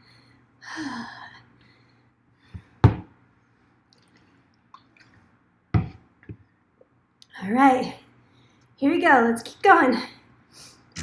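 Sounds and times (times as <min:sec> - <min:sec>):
sharp knocks: 0:02.8 - 0:03.1.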